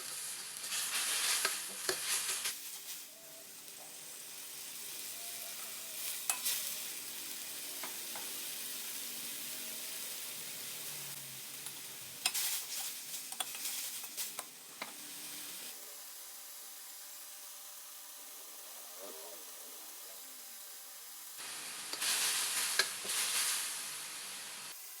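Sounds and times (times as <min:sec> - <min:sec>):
stir-fry sizzling in a pan: 0:00.0 - 0:25.0
spatula scraping and clatter: 0:12.2 - 0:15.0.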